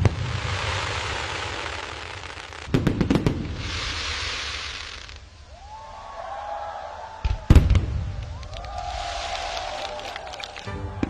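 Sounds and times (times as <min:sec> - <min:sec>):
fireworks sharp bangs: 0:00.0 - 0:05.4, 0:07.2 - 0:09.7
fireworks crackling: 0:00.0 - 0:11.0.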